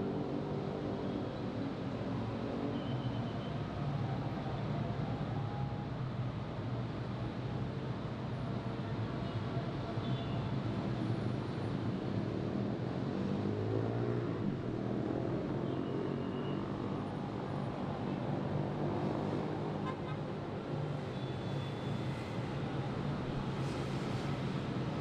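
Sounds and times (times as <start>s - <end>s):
road traffic hum: 6.3s - 25.0s.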